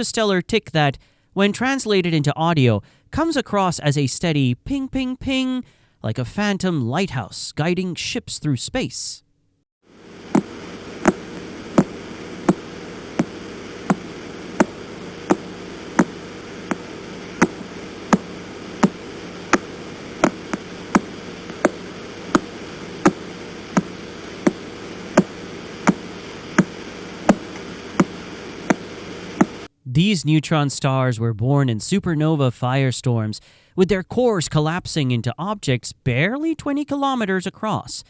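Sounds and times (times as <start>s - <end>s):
static hiss and hum: 9.9s - 30.2s
sharp evenly spaced clicks: 10.3s - 29.7s.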